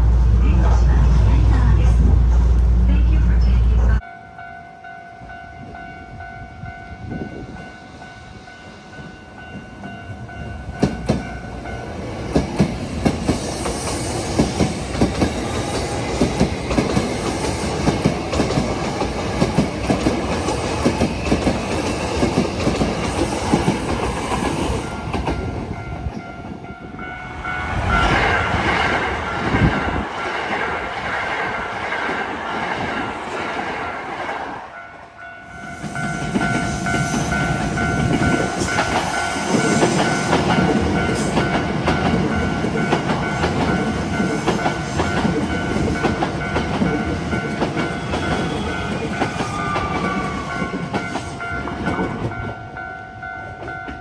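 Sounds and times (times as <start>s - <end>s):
crossing bell warning tones: 0.0s - 31.8s, 34.7s - 54.0s
train wheels clicking over rail joints: 12.2s - 26.4s, 35.8s - 52.5s.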